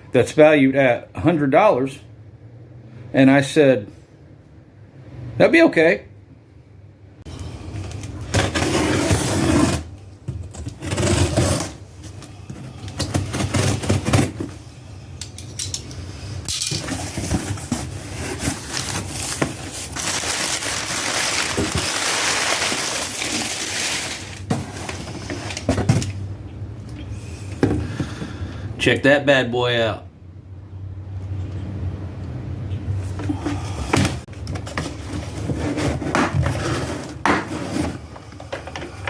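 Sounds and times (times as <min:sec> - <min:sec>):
packaging tearing and crinkling: 0:16.8 - 0:25.7.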